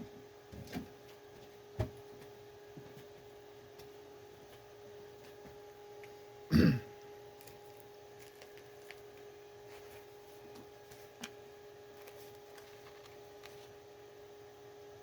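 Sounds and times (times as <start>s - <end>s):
steady faint hum: 0.0s - 15.0s
person clearing throat: 6.5s - 6.9s.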